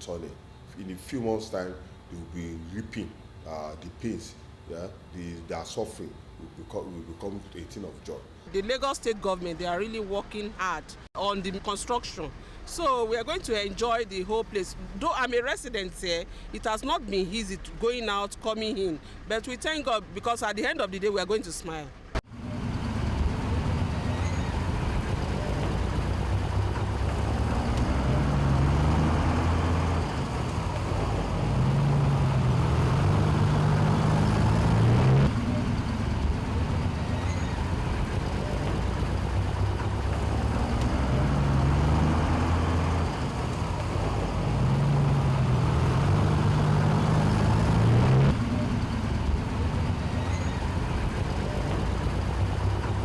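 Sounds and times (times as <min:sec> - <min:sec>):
road traffic: 0:00.0 - 0:53.0
heavy diesel engines running: 0:08.5 - 0:53.0
deep engine note climbing: 0:22.3 - 0:53.0.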